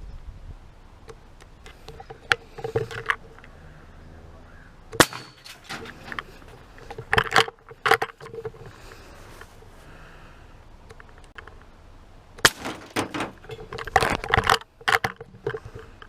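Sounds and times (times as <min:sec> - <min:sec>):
clicks and knocks: 0:05.0 - 0:08.7, 0:12.4 - 0:15.9.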